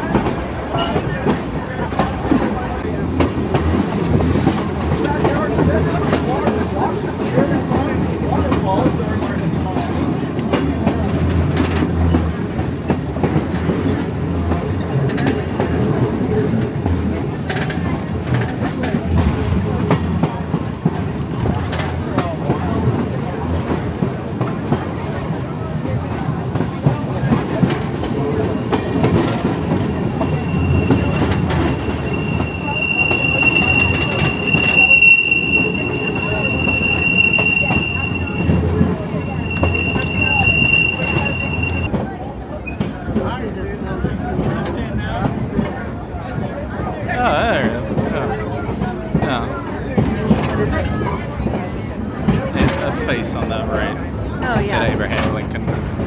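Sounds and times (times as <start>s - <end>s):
train rumbling on track: 0.0s - 56.0s
wheels clicking over rails: 19.9s - 41.9s.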